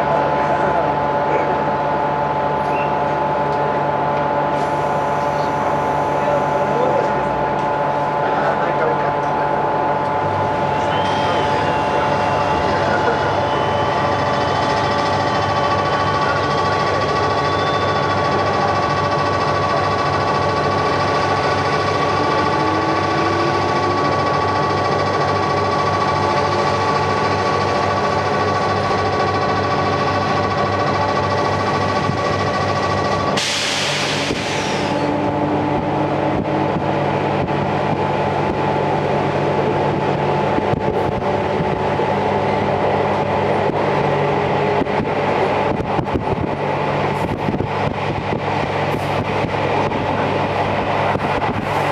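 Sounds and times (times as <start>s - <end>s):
electric train rumbling: 0.0s - 51.9s
humming tones: 20.7s - 29.1s.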